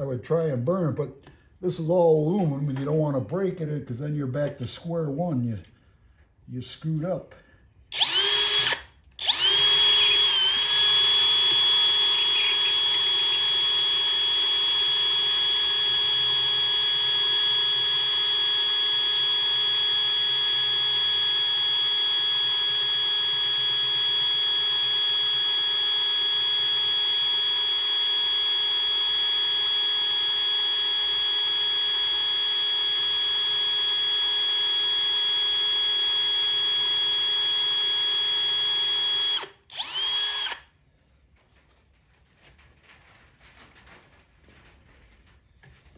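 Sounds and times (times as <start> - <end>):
electric drill whining: 7.9 - 40.7.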